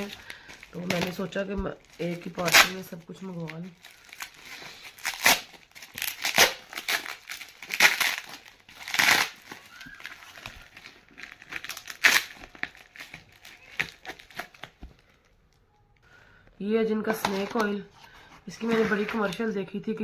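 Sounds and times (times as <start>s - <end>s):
plastic ripping: 0.0s - 15.2s
plastic packaging crinkling: 0.0s - 15.6s.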